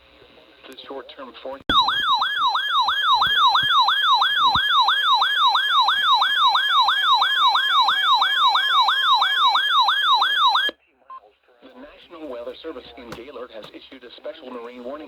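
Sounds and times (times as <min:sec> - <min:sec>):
warbling electronic siren alarm: 0:01.7 - 0:10.8.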